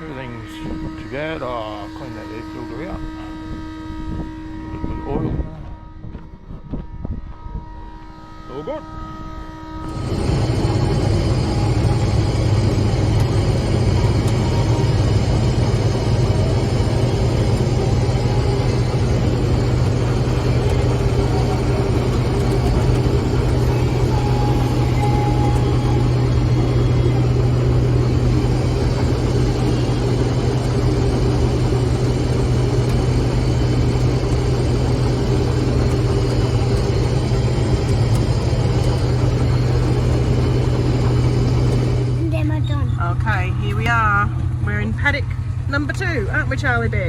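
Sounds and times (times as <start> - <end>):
vehicle engine and road hum: 9.9 - 47.0.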